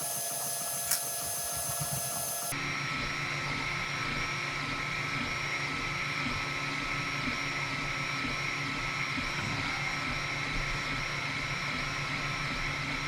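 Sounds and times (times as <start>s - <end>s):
fan hissing: 0.0s - 2.6s
stepper motors whining: 0.0s - 2.6s.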